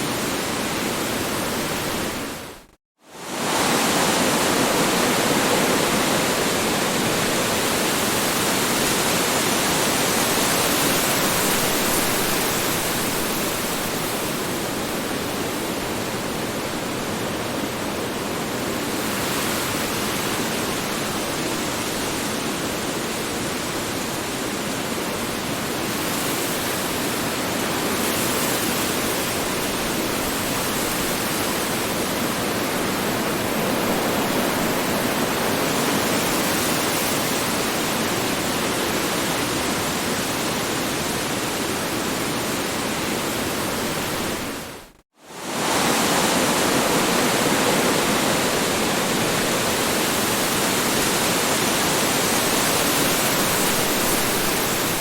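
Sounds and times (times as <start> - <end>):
strong wind blowing: 27.7 - 55.0.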